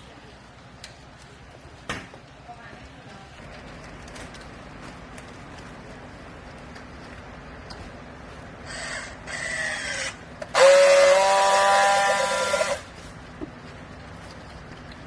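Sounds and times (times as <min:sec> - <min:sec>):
steady machine hum: 0:00.0 - 0:15.0
hydraulic baler whine: 0:08.6 - 0:12.9.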